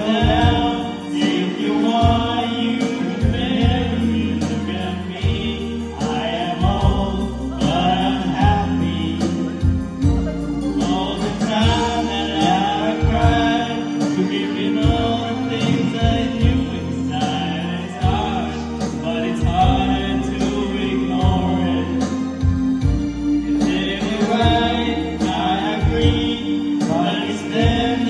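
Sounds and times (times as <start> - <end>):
song with vocals and beat: 0.0 - 28.0.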